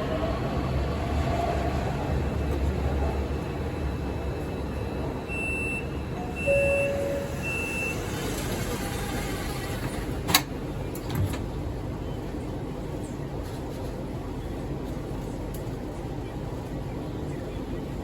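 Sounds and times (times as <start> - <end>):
subway train rumble: 0.0 - 18.0
short high beeps: 5.3 - 8.0.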